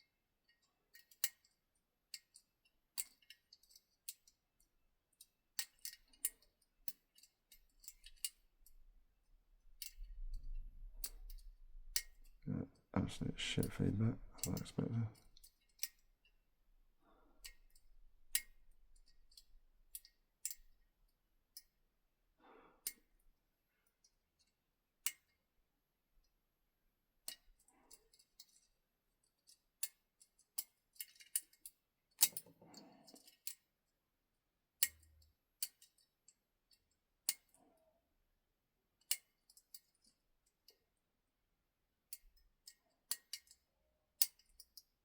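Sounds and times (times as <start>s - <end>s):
lock pick metallic clicks: 42.1s - 43.6s, 44.2s - 44.8s.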